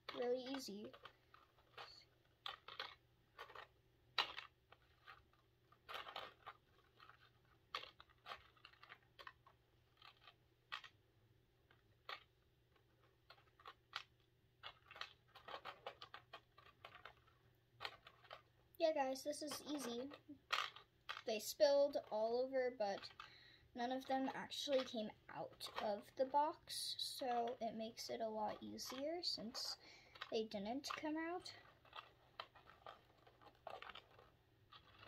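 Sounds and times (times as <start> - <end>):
plastic beads clicking and rattling: 0.0 - 35.0.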